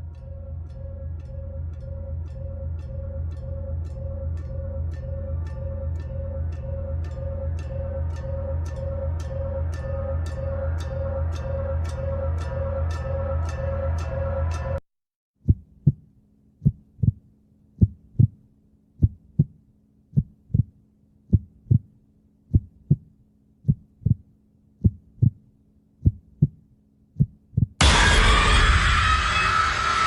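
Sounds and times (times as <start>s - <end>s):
heartbeat double thump: 16.6s - 17.2s.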